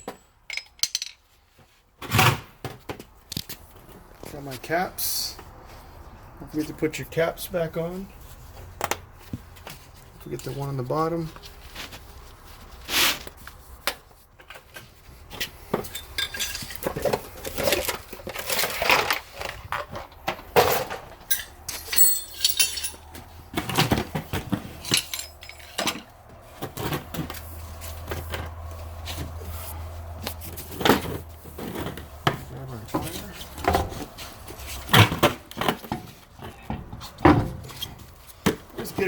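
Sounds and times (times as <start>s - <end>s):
metal tools clinking and clattering: 0.0s - 1.4s, 15.8s - 26.1s.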